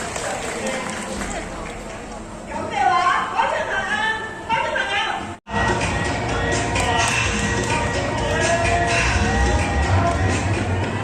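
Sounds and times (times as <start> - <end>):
crowd noise: 0.0 - 11.0
music playing: 5.5 - 11.0.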